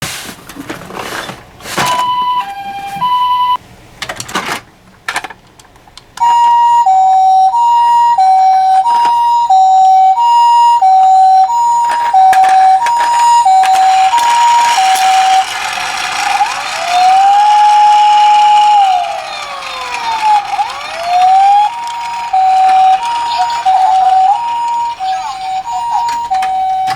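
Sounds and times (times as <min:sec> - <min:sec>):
two-tone ambulance siren: 0:06.2 - 0:26.9
wailing siren: 0:07.5 - 0:26.9.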